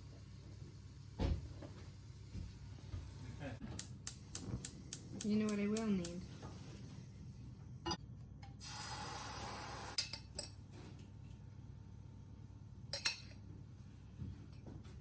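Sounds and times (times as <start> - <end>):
utensils and dishes clinking: 13.0 - 13.4.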